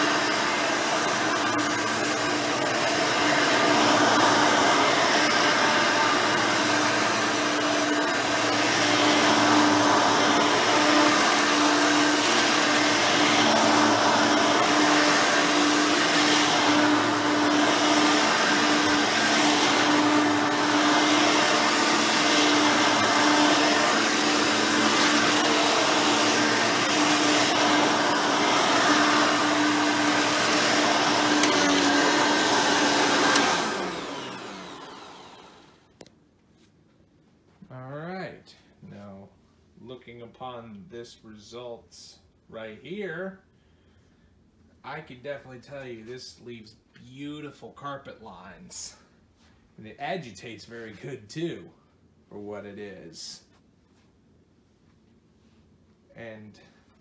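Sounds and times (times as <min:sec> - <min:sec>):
brush roll agitating carpet: 0:00.0 - 0:34.6
upright vacuum humming: 0:00.0 - 0:36.1.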